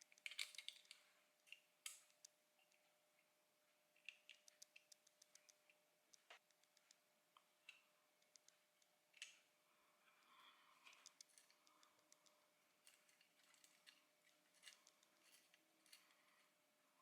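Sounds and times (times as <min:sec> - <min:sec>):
plastic parts clicking: 0:00.0 - 0:02.3, 0:10.2 - 0:16.1.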